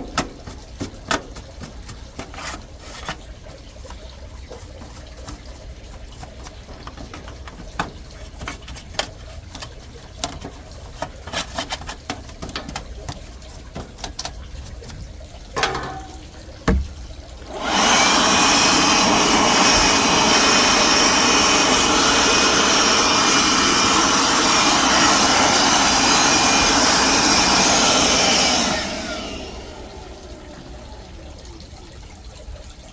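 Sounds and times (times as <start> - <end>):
cleaning jet hissing: 17.5 - 30.8.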